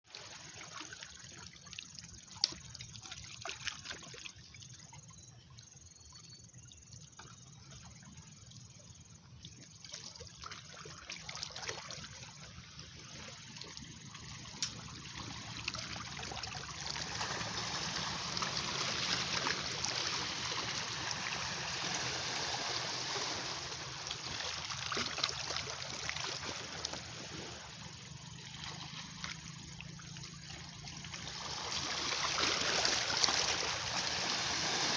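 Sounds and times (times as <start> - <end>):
sea water washing on shore: 10.9 - 29.4, 31.0 - 34.9.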